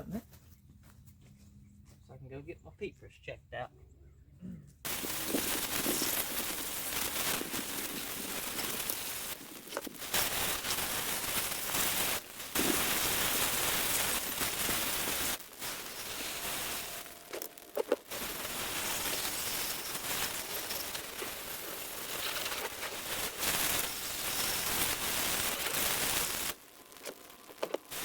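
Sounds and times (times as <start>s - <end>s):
garden hose spraying water: 4.9s - 28.0s.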